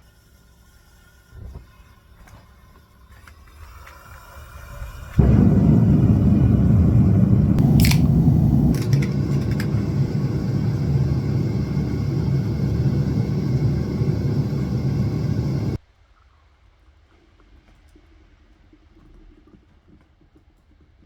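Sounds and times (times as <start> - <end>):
loud steady low rumble: 5.2 - 15.8.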